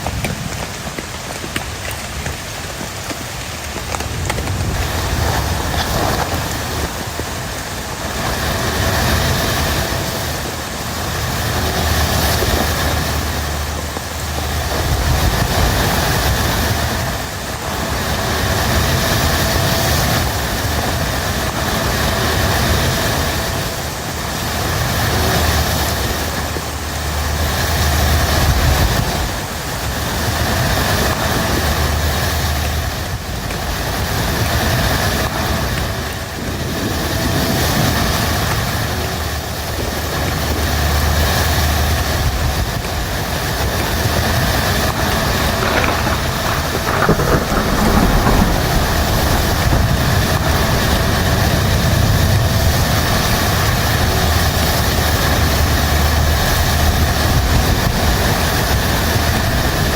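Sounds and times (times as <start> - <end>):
strong wind gusting: 0.0 - 59.9.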